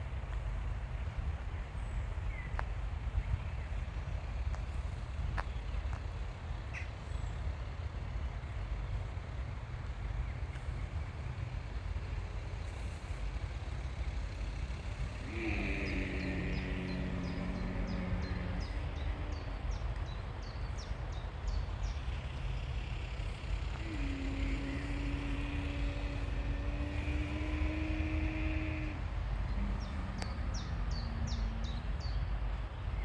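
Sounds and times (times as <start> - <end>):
camel moaning: 13.5 - 20.2, 22.6 - 33.0
low rumble: 14.4 - 20.7, 21.9 - 33.0.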